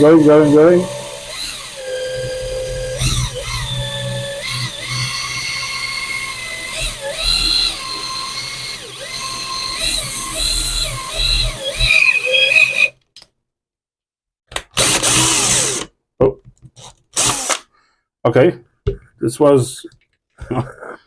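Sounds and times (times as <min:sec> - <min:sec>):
electric drill whining: 0:00.0 - 0:12.9, 0:14.8 - 0:15.9, 0:17.2 - 0:17.6
loud noisy rasp: 0:00.0 - 0:12.9.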